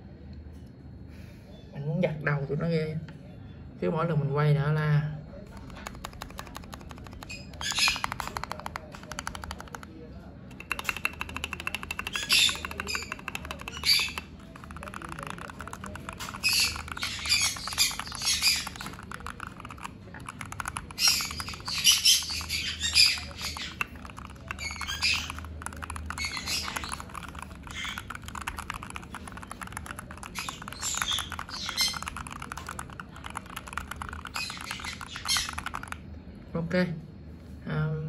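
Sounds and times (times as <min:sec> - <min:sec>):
mechanical keyboard typing: 0:05.5 - 0:36.1
parrots squawking: 0:20.6 - 0:29.2, 0:34.3 - 0:35.9.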